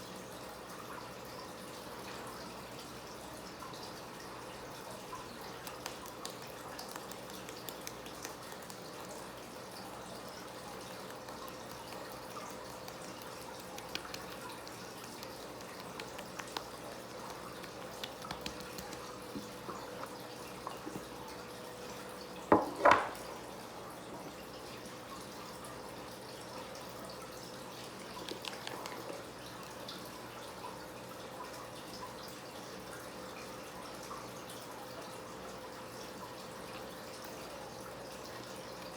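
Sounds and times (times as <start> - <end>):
faint dripping: 0.0 - 38.9
small wet handling clicks: 5.5 - 9.3, 10.7 - 21.0, 28.0 - 29.8.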